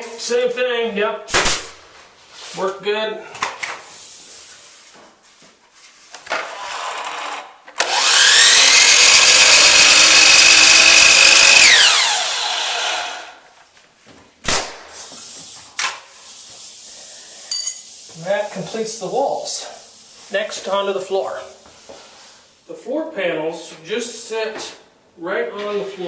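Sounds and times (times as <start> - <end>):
power saw cutting wood: 6.4 - 13.4.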